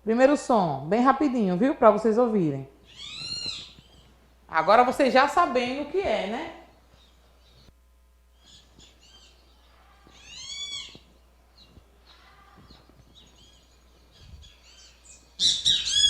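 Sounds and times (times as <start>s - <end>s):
bird chirping: 2.8s - 4.2s, 6.6s - 16.0s.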